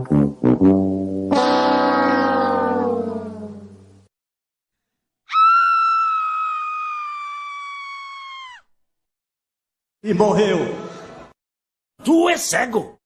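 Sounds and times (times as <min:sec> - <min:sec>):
falling brass-like tone: 0:00.0 - 0:04.0
long high-pitched scream: 0:05.3 - 0:08.7.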